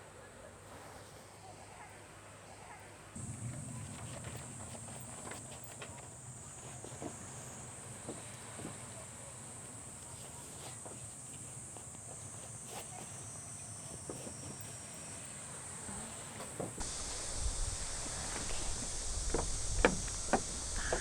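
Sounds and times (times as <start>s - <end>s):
light taps and knocks: 16.6s - 21.0s
insect chirring: 16.8s - 21.0s.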